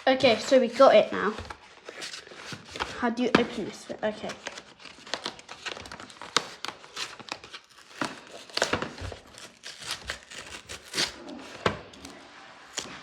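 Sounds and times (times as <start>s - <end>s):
package crinkling and tearing: 4.0s - 13.0s.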